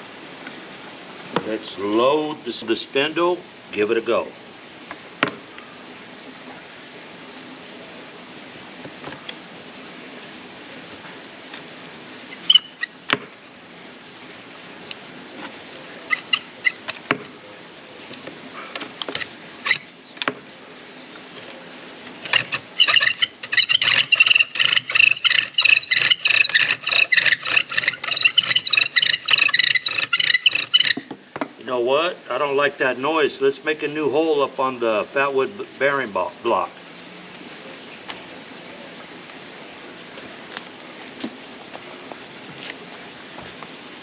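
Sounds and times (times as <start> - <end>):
bow drill squeaking and screeching: 12.3 - 13.0, 16.0 - 17.0, 19.2 - 20.0, 22.2 - 31.1
bow drill creaks and clicks: 18.7 - 20.4, 22.2 - 31.1.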